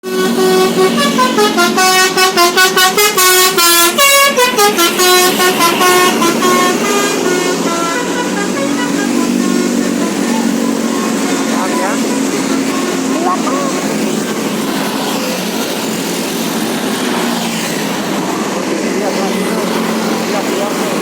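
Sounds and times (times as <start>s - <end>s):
bus horn playing a tune: 0.0s - 14.0s.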